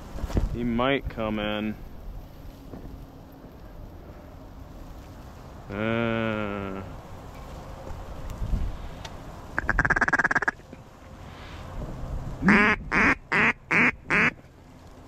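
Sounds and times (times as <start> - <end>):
duck call chatter: 9.6 - 10.6, 12.4 - 14.4
duck call quacks: 9.6 - 10.6, 12.4 - 14.4.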